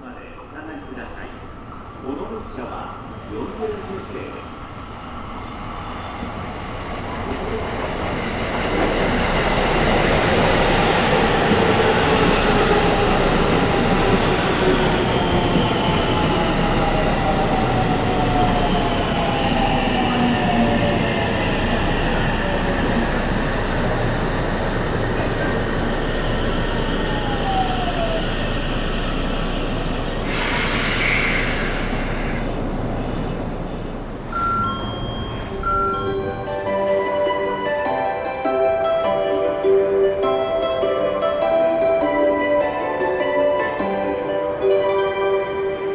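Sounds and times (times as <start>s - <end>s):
train wheel and running noise: 0.0s - 37.0s
electric train inverter whine: 4.1s - 36.9s
air brake hiss: 30.2s - 34.1s.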